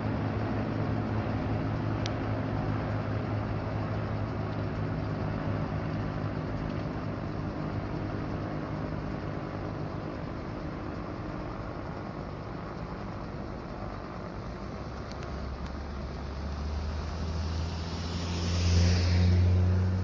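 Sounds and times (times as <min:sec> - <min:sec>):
train rumbling past: 0:14.4 - 0:20.0.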